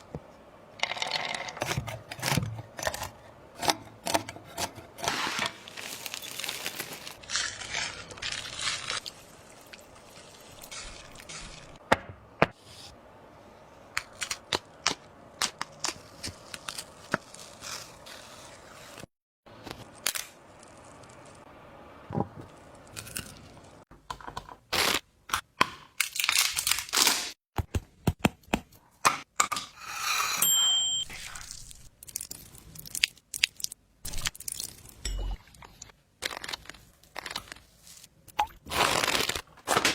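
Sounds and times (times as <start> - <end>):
scraping and crinkling: 5.0 - 11.8.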